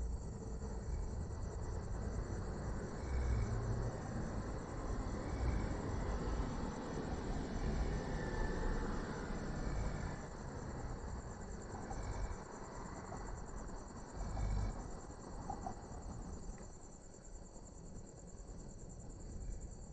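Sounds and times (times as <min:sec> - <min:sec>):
crickets chirring: 0:00.0 - 0:19.9
cow snoring: 0:14.1 - 0:14.9.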